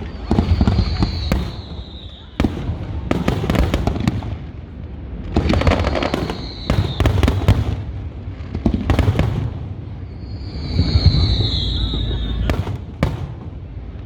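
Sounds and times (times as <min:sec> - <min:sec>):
whistling firework shell: 0:00.0 - 0:03.7, 0:05.5 - 0:07.9, 0:10.0 - 0:13.4
fireworks bangs and crackling: 0:00.0 - 0:14.0.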